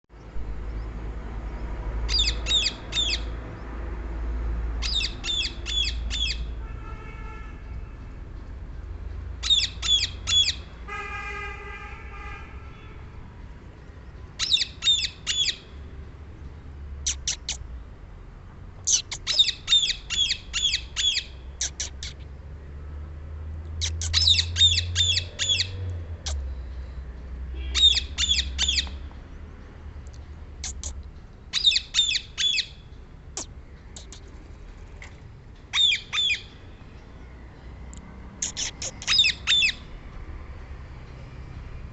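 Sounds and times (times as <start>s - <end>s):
parakeet squawking: 2.1s - 3.3s, 4.8s - 6.5s, 9.4s - 10.6s, 14.4s - 15.6s, 17.0s - 17.6s, 18.9s - 22.2s, 23.8s - 25.7s, 27.6s - 28.9s, 30.6s - 32.7s, 38.4s - 39.8s.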